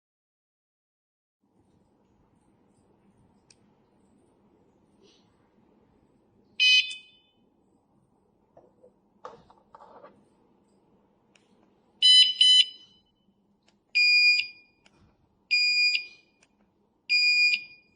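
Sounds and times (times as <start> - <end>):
alarm beeping: 6.6 - 7.3, 12.0 - 13.1, 17.1 - 17.9.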